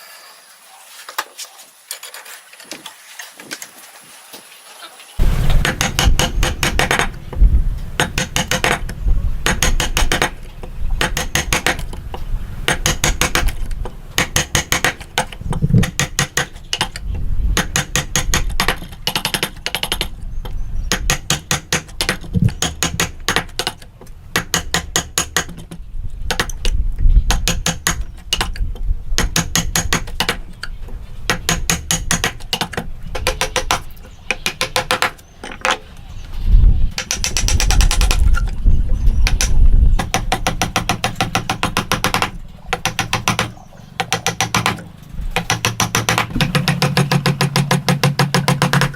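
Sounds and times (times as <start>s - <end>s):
hammer striking chisel into wood: 8.0s - 10.4s, 11.0s - 11.9s, 12.7s - 13.6s, 14.2s - 17.0s, 17.6s - 20.1s, 20.9s - 23.8s, 24.4s - 25.7s, 26.3s - 26.7s, 27.3s - 28.6s, 29.2s - 30.4s, 31.3s - 33.8s, 34.4s - 35.6s, 37.0s - 38.2s, 39.2s - 44.8s, 45.4s - 48.9s.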